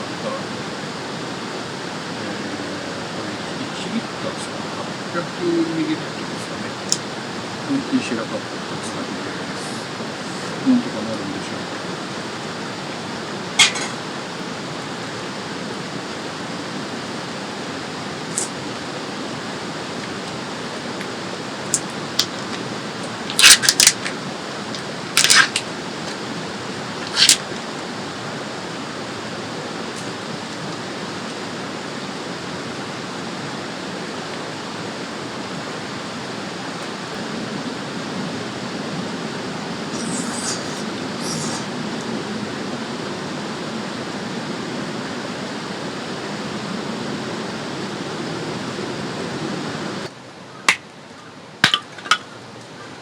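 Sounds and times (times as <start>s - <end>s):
river rushing: 0.0s - 52.6s
camp gear clicking and knocking: 23.3s - 25.7s, 51.6s - 52.3s.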